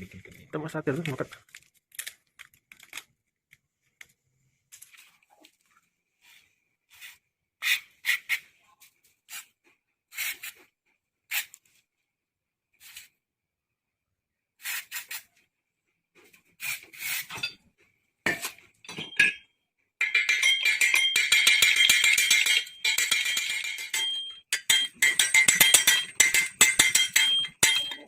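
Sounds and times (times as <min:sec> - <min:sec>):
metal tools clinking: 0:18.3 - 0:19.4, 0:20.0 - 0:28.0
metallic scraping and tapping: 0:18.3 - 0:19.4, 0:20.0 - 0:28.0.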